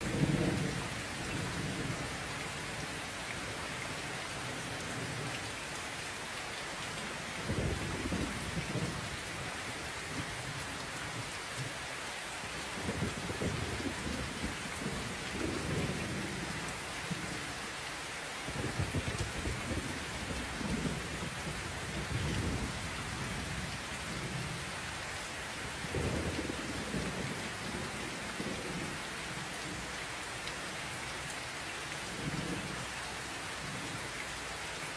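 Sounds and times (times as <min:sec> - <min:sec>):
low thunder rumbles: 0:00.0 - 0:02.9, 0:07.4 - 0:09.2, 0:12.8 - 0:17.3, 0:18.5 - 0:24.7, 0:25.6 - 0:29.8
steady rain falling: 0:00.0 - 0:34.9.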